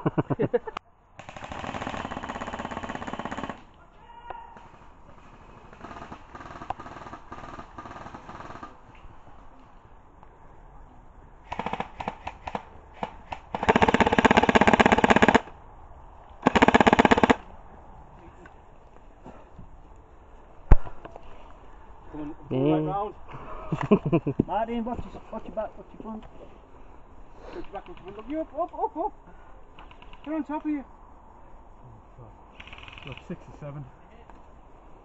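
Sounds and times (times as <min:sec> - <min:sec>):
airsoft rifles firing bursts: 0:01.2 - 0:03.7, 0:04.6 - 0:08.9, 0:11.4 - 0:15.6, 0:16.4 - 0:17.5, 0:32.6 - 0:33.3.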